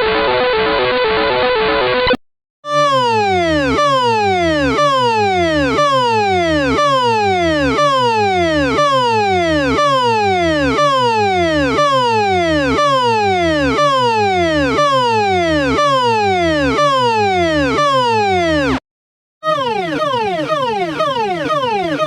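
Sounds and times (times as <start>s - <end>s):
falling electronic siren tone: 2.7s - 18.8s, 19.4s - 22.0s.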